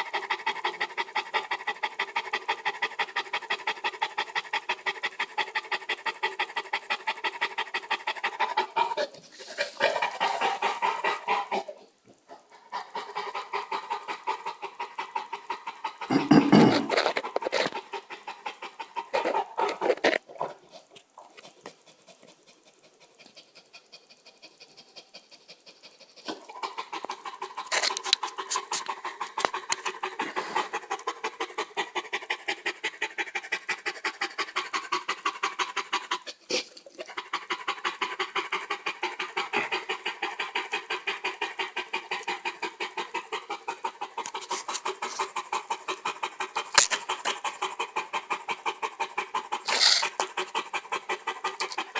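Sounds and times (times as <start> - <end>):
dog panting heavily: 0.0 - 11.8, 12.4 - 51.9.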